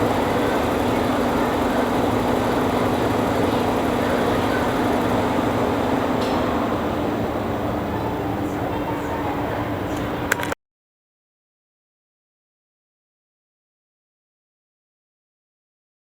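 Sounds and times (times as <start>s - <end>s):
car engine idling: 0.0s - 10.6s.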